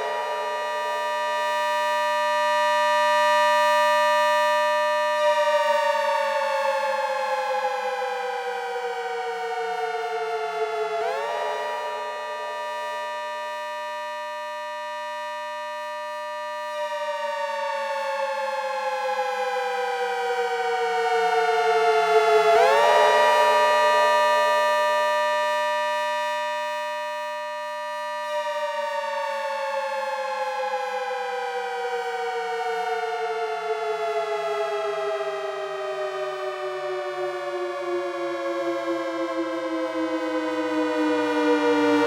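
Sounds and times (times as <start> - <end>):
synthesized siren wailing: 19.1 - 25.6, 31.4 - 42.0.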